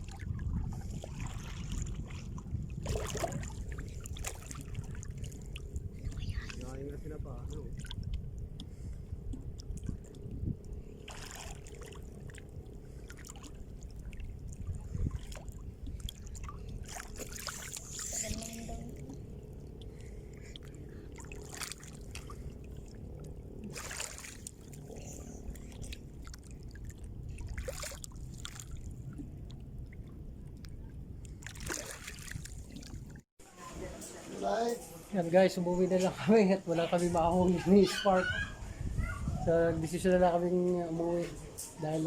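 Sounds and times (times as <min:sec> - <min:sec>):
steady low rumble: 0:00.0 - 0:33.3
seawater splashing and trickling: 0:00.0 - 0:34.4.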